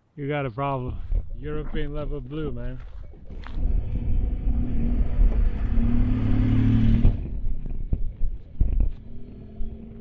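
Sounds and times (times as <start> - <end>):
low rumble: 3.3 - 10.0
vehicle engine running: 3.4 - 10.0.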